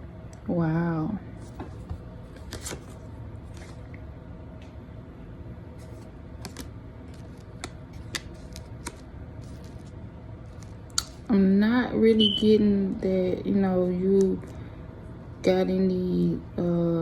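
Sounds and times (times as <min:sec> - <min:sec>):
steady low hum: 0:00.0 - 0:17.0
cards clicking and tapping: 0:05.9 - 0:09.9.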